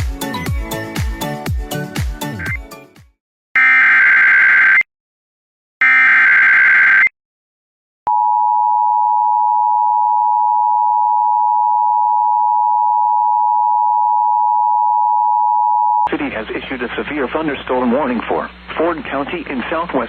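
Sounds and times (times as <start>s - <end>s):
screeching digital data burst: 5.8s - 7.1s.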